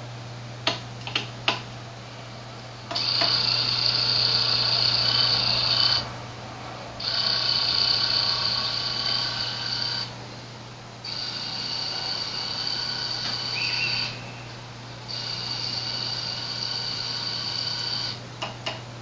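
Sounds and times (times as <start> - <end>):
motor whining: 2.9 - 6.2, 7.0 - 18.2.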